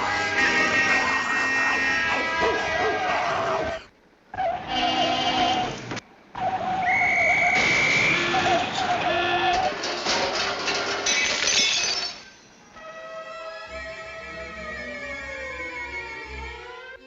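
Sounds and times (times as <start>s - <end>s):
high sliding whistle: 6.5s - 8.7s.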